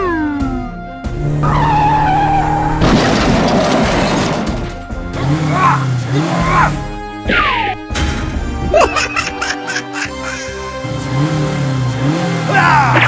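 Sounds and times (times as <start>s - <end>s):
cartoon background music: 0.0s - 3.5s, 5.3s - 13.0s
crash with shattering: 2.8s - 5.0s.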